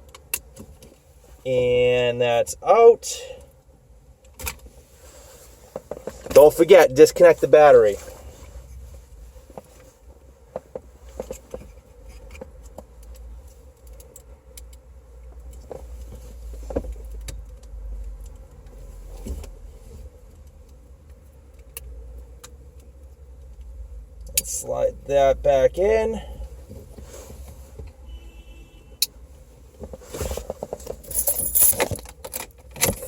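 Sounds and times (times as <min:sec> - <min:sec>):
car parts and tools clicking: 0:10.5 - 0:19.6, 0:29.8 - 0:33.0.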